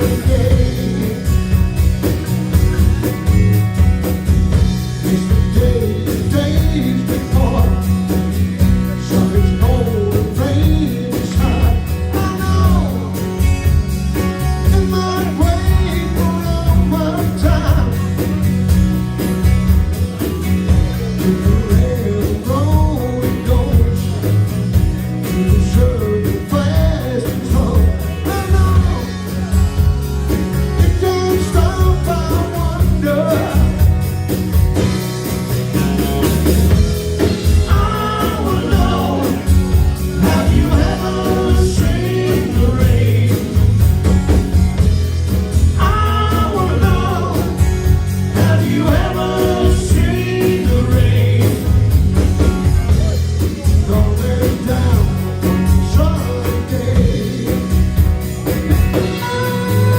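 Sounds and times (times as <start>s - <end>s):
man singing lead vocals: 0.0s - 1.7s, 4.9s - 8.2s, 8.8s - 13.6s, 14.5s - 18.4s, 20.7s - 24.5s, 25.2s - 29.6s, 30.7s - 34.0s, 37.2s - 44.4s, 45.6s - 52.4s, 53.0s - 59.9s
rock band playing: 0.0s - 59.9s
backing vocals: 37.2s - 44.1s, 45.6s - 52.1s.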